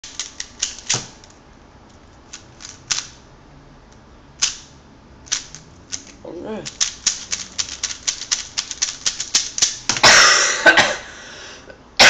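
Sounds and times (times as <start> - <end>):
speedcube plastic clicks: 0.0 - 1.3, 2.3 - 3.2, 5.3 - 10.0.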